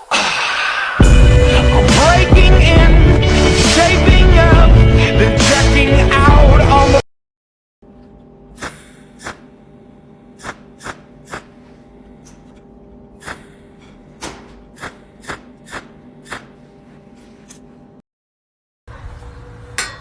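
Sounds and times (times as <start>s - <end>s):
steady electrical hum: 7.9s - 18.0s.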